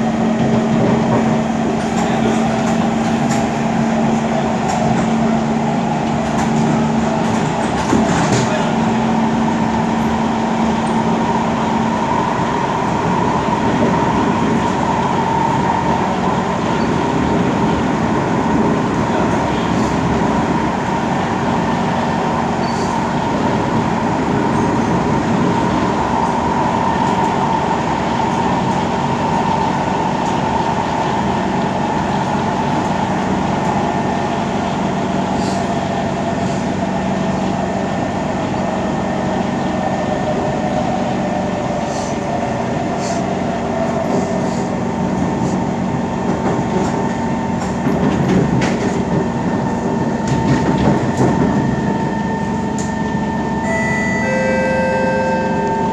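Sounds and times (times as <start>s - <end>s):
wheel and track rumble: 0.0s - 55.9s
traction motor whine: 52.2s - 55.9s.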